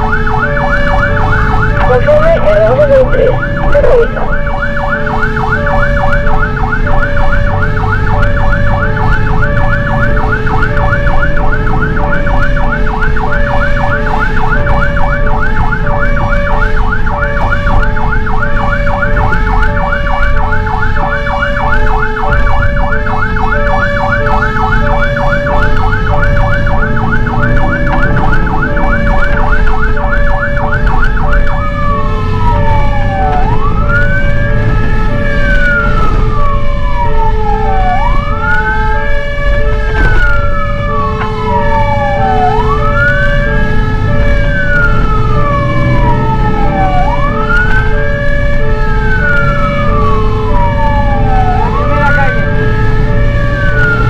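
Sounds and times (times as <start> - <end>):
electronic siren yelping: 0.0 - 54.0
truck engine: 0.0 - 54.0
two-tone siren: 0.0 - 54.0.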